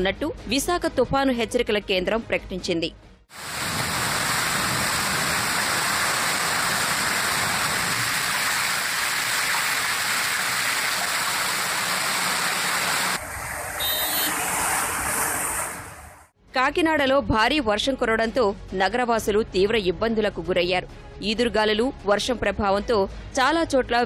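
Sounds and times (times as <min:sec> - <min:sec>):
heavy rain: 0:03.3 - 0:16.3
rushing storm water: 0:03.3 - 0:16.3
brief high-pitched tone: 0:13.8 - 0:14.5.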